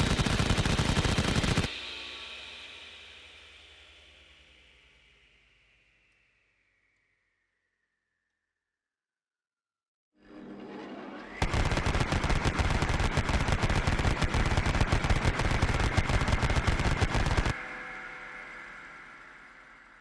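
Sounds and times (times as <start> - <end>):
machine gun automatic fire: 0.0 - 1.7, 11.4 - 17.6.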